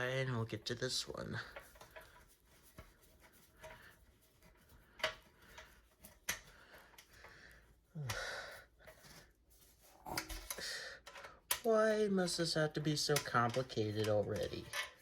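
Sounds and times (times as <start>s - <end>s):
heavy breaths of effort: 6.5s - 8.8s.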